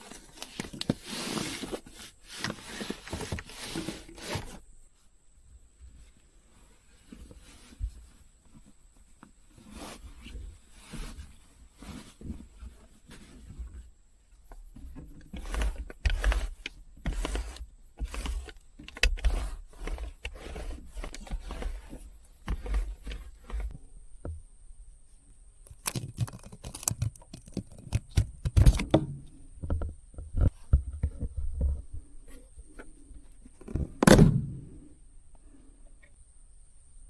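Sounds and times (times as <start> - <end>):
rustling: 0.0 - 23.8
camping gear knocks and clatter: 18.0 - 24.4.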